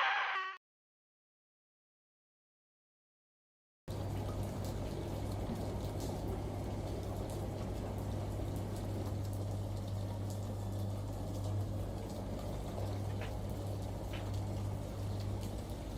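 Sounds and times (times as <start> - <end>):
washing machine humming: 3.9 - 15.9.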